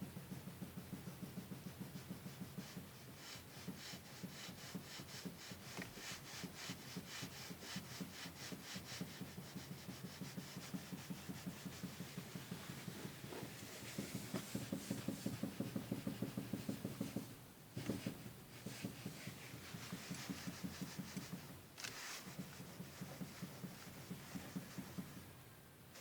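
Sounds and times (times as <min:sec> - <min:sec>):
low knocking in car steering: 0:09.8 - 0:21.5.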